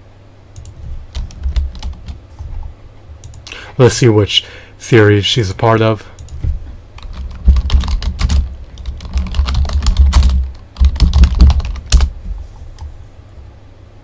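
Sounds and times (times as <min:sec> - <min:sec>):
computer keyboard typing: 0:00.6 - 0:03.5, 0:06.2 - 0:06.4, 0:07.0 - 0:12.2.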